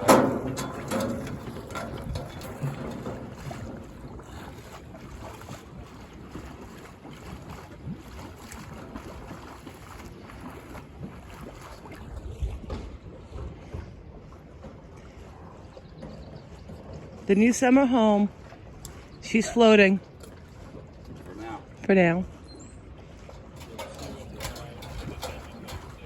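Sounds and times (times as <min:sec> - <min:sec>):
wind on microphone: 0:00.0 - 0:14.4
water lapping: 0:00.0 - 0:26.0.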